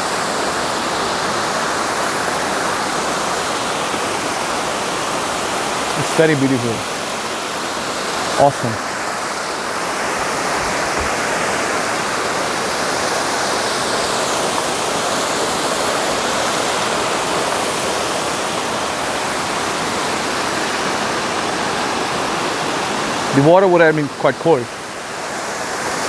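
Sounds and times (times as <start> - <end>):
waterfall rushing: 0.0 - 26.0.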